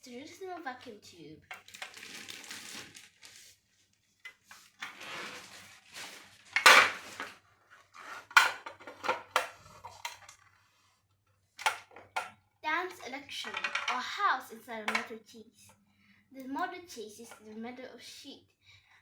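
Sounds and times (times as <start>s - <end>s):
hard objects clattering: 4.8s - 10.5s, 13.4s - 14.0s.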